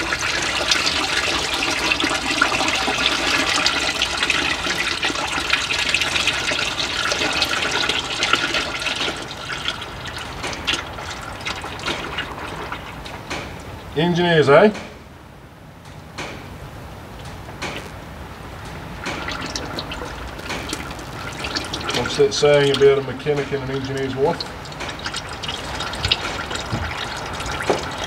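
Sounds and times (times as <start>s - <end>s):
oil pouring into a container: 0.0s - 13.0s, 19.2s - 28.0s.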